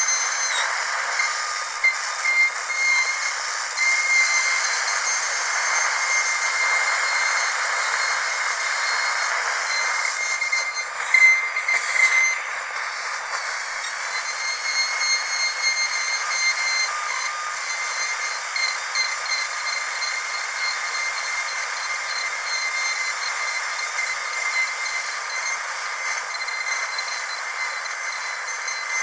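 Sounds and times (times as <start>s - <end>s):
dental drill whine: 0.0s - 29.0s
hiss: 0.0s - 29.0s.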